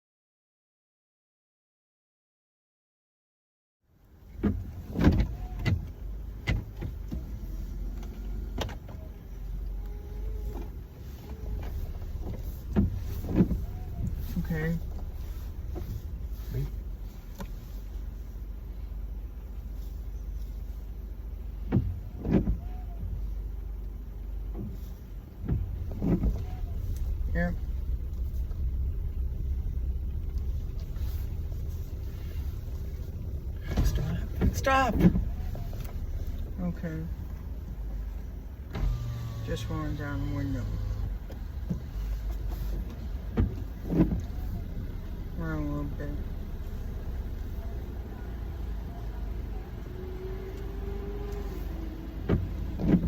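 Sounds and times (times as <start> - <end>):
road and engine rumble: 3.8 - 53.0.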